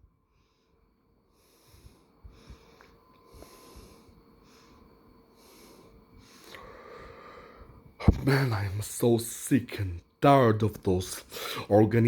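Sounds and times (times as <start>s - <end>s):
faint short breaths: 1.4s - 7.8s.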